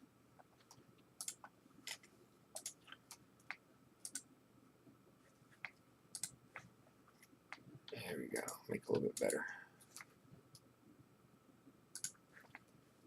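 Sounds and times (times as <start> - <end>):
computer keyboard and mouse clicking: 0.5 - 4.3, 5.6 - 6.7, 8.4 - 10.6, 11.9 - 12.7.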